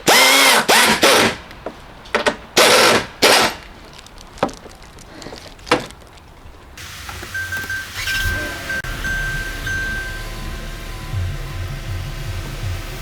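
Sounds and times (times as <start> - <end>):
cordless drill bursts: 0.0 - 1.4, 2.6 - 3.6, 6.8 - 13.0
soft chime tune: 7.2 - 12.5.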